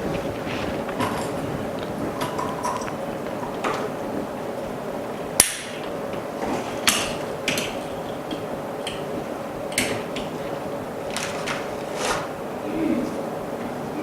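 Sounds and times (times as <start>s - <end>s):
steady machine hum: 0.0s - 14.0s
small objects clicking and tapping: 0.7s - 3.9s.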